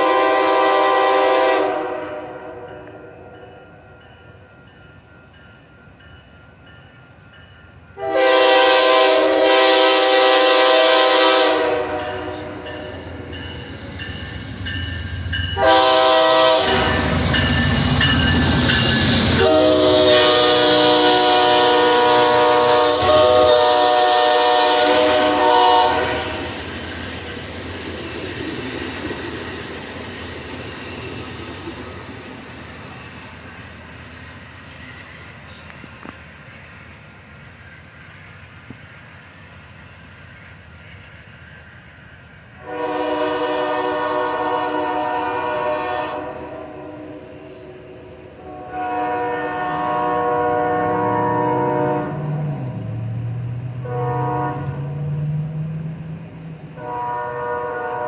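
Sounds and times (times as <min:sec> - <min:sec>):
train horn blasts: 0:00.0 - 0:03.7, 0:08.0 - 0:26.8, 0:42.6 - 0:58.0
locomotive rumble: 0:08.0 - 0:39.2, 0:48.0 - 0:58.0
passenger cars rolling by: 0:10.9 - 0:38.9, 0:49.2 - 0:58.0.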